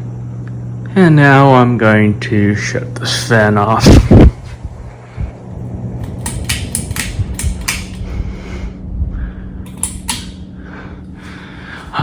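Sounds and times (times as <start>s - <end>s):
ceiling fan coasting down: 0.0s - 12.0s
steady low hum: 0.0s - 12.0s
sharp clicks and ticks: 6.0s - 8.0s, 9.7s - 10.4s.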